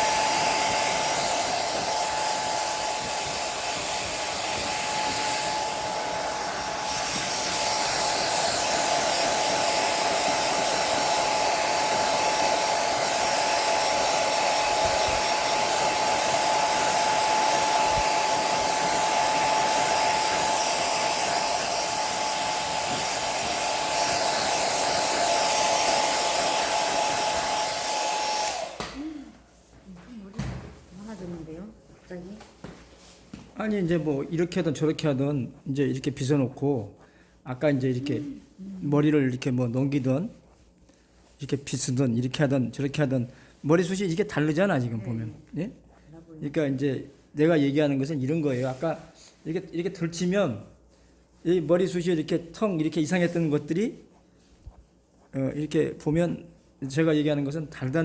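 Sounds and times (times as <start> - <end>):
hair dryer whining: 0.0 - 29.9, 37.5 - 40.0, 46.4 - 50.6, 51.7 - 53.9.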